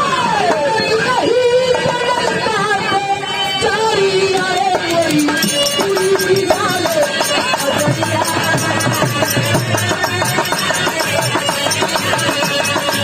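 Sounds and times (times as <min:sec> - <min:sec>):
hand-drum strokes: 0:04.3 - 0:13.0.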